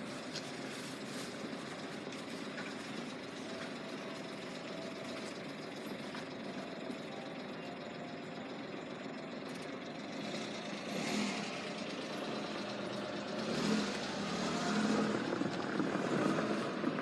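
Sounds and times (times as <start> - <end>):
vehicle engines idling and pulling away: 0.0 - 17.0.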